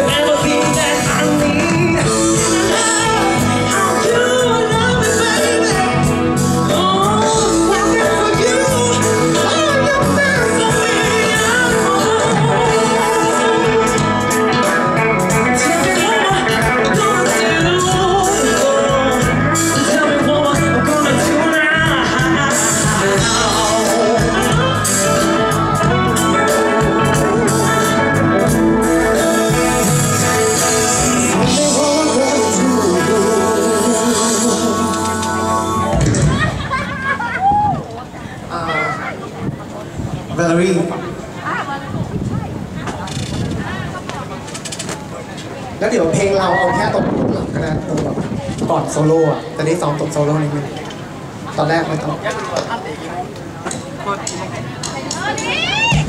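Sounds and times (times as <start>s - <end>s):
voice singing: 0.0s - 37.8s
live band playing pop: 0.0s - 56.0s.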